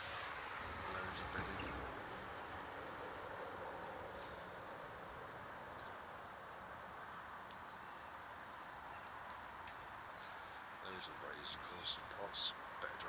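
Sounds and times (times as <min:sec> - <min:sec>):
outdoor background hum: 0:00.0 - 0:13.0.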